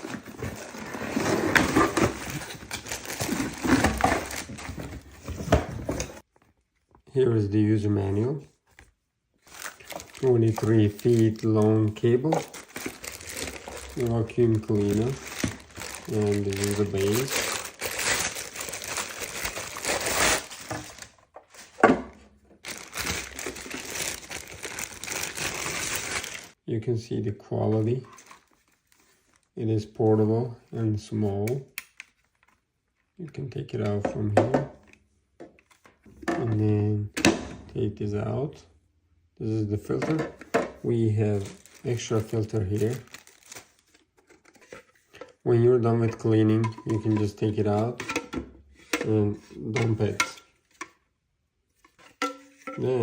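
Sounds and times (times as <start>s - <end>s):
cardboard and plastic rustling: 0.0s - 7.0s, 8.6s - 26.6s, 27.9s - 29.5s, 40.1s - 45.4s, 49.8s - 50.9s
packaging wrap crinkling: 1.8s - 5.1s, 9.4s - 21.7s, 22.6s - 26.6s, 41.2s - 44.7s.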